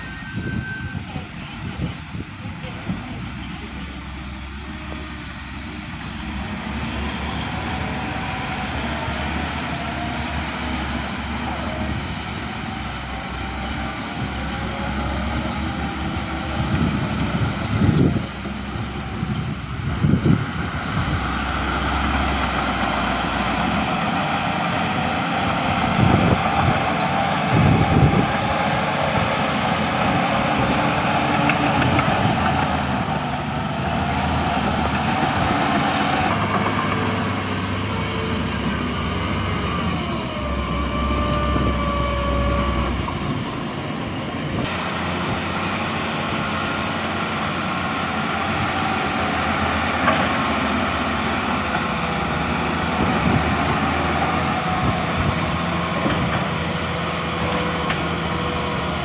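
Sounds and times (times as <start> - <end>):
falling squeal: 0.0 - 1.2, 36.4 - 43.8
heavy diesel machinery running: 0.0 - 59.0.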